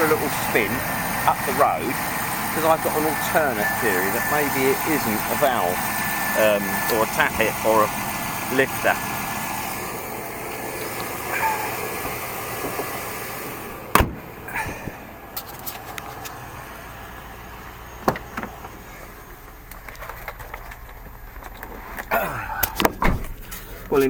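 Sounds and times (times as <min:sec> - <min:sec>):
car engine running: 0:00.0 - 0:24.0
car door shutting: 0:10.7 - 0:15.0, 0:18.0 - 0:18.9, 0:21.6 - 0:24.0.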